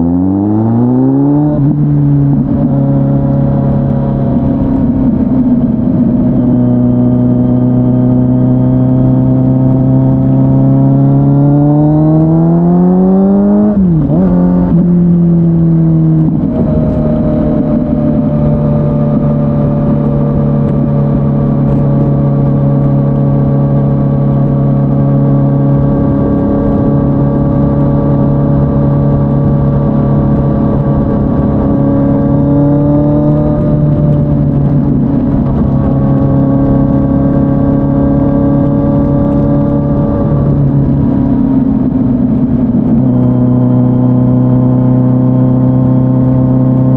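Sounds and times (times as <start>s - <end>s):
motorcycle engine revving: 0.0s - 46.9s.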